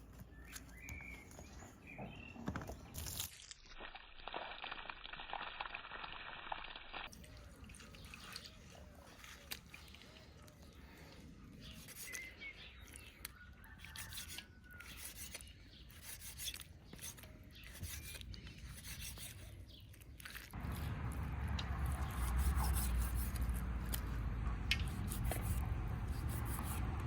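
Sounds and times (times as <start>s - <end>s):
scraping and rubbing strokes: 11.6s - 13.1s, 13.8s - 19.6s, 20.2s - 27.0s
steady low rumble: 20.6s - 27.0s.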